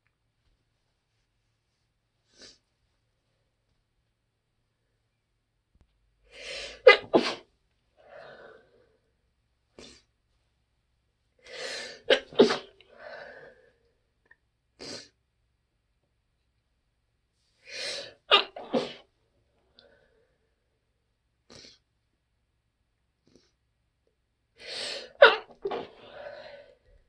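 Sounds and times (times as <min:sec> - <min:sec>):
muffled stifled sneezes: 0:06.5 - 0:07.5, 0:11.7 - 0:12.8, 0:17.8 - 0:19.1, 0:24.7 - 0:26.4.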